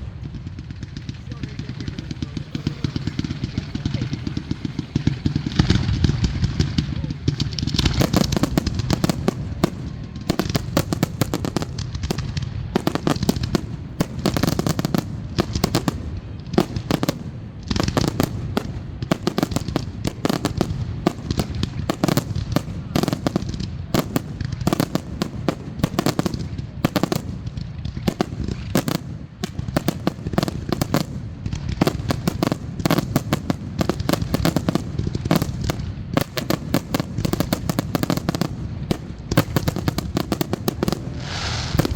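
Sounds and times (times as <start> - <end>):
fireworks bangs and crackling: 0.0 - 41.9.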